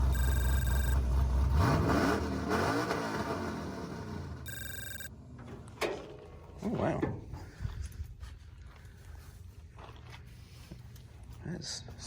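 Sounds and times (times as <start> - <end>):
steady high tone: 0.0 - 1.0, 4.5 - 5.1
v eight engine revving: 0.0 - 5.1.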